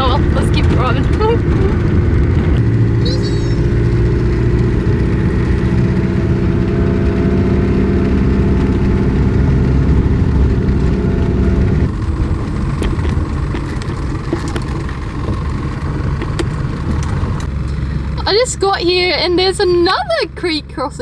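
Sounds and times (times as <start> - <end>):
vehicle engine driving on dirt: 0.0 - 21.0
clicks and knocks: 8.6 - 17.5.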